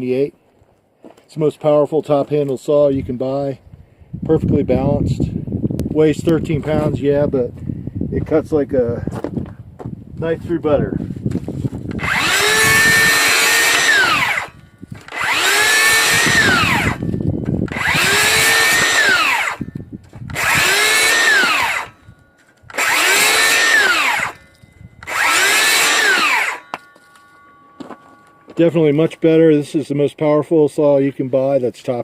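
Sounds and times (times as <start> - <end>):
circular saw cutting wood: 11.9 - 19.7, 20.3 - 30.4.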